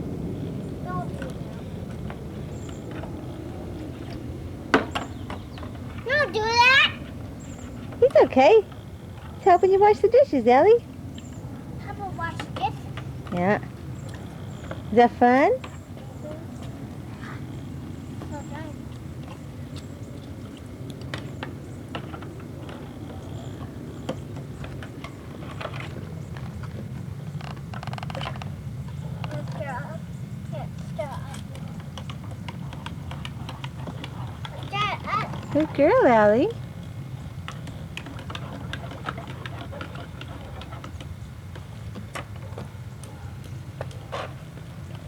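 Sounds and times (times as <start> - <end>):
steady low rumble: 0.0 - 34.4.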